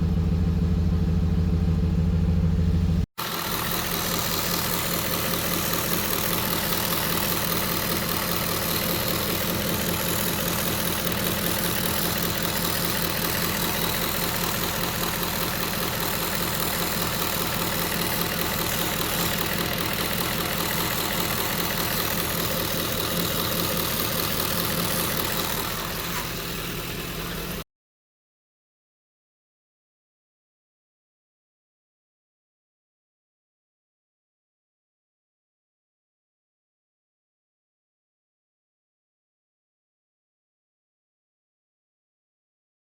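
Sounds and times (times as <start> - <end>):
engine buzzing: 0.0 - 27.6
engine idling: 0.0 - 27.6.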